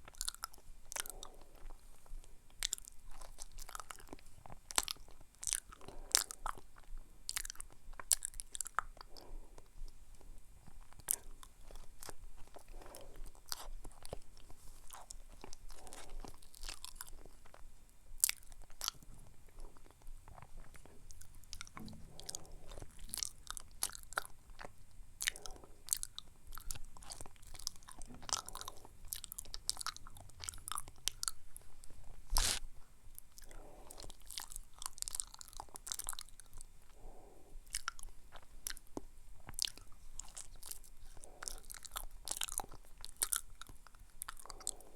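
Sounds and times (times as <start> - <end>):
person chewing banana: 0.0 - 44.9
wet mouth clicks: 18.3 - 32.7.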